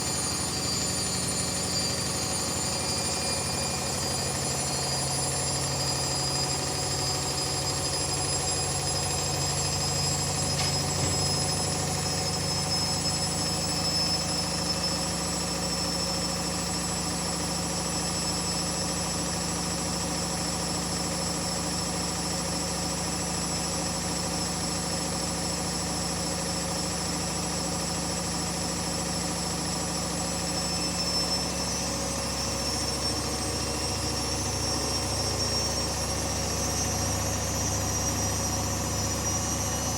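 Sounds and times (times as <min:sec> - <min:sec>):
washing machine spinning: 0:00.0 - 0:18.2.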